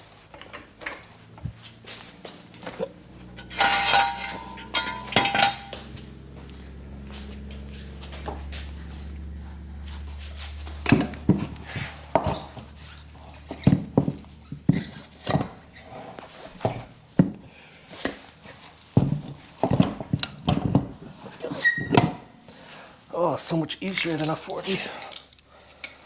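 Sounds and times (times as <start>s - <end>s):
low steady hum: 0.0s - 21.1s
metal knocks and clanks: 0.4s - 9.4s.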